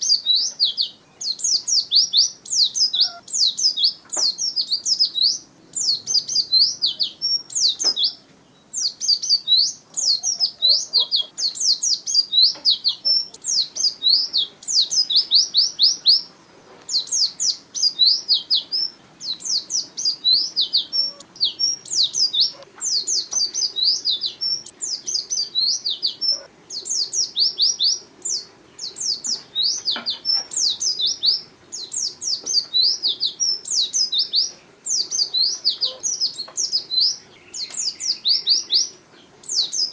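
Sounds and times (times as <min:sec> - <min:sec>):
bird twittering song: 0:00.0 - 0:39.9.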